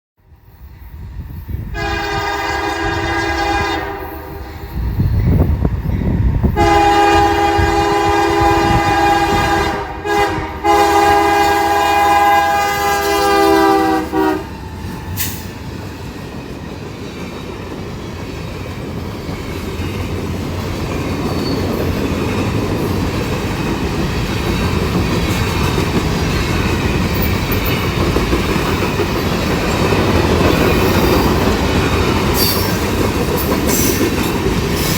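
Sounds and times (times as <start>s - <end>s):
train rumble and wheel noise: 0.2s - 34.9s
locomotive air horn blasts: 1.7s - 4.4s, 6.6s - 14.5s.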